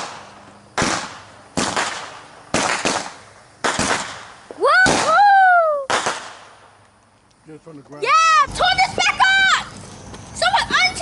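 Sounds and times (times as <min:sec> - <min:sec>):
whistling firework shriek: 0:00.0 - 0:06.4
firework bangs: 0:00.0 - 0:06.8.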